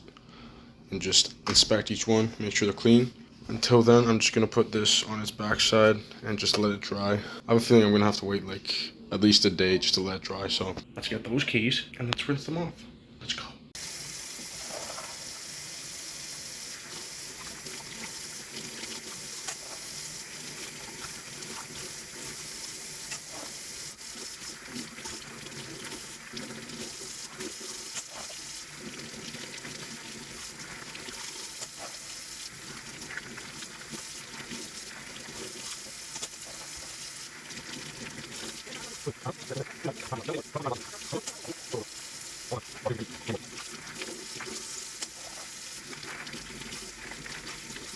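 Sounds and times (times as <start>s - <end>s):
tap water running into sink: 13.8s - 47.9s.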